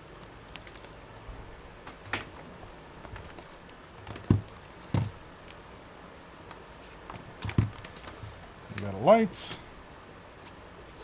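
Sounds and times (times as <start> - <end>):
dull knocks of laptop parts: 4.0 - 5.2, 7.1 - 8.4.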